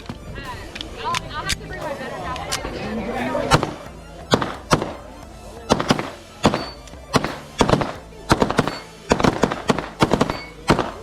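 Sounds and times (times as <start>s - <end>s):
music: 0.0s - 11.0s
pistol shots: 3.5s - 5.0s, 5.7s - 11.0s.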